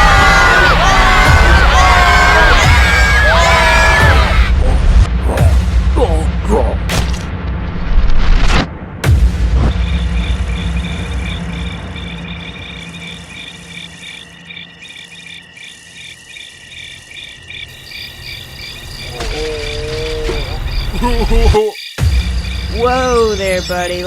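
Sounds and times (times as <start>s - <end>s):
low rumble: 0.5s - 14.8s
cricket chirping: 9.6s - 24.0s.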